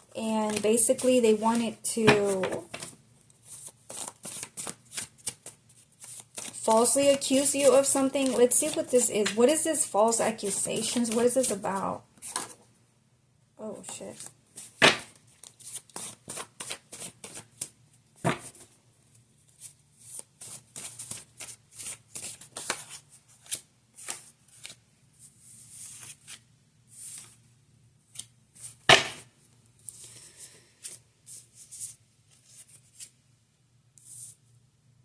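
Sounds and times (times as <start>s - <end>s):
cards being shuffled by hand: 0.3s - 12.6s, 13.9s - 18.7s, 19.4s - 26.4s, 30.8s - 33.2s.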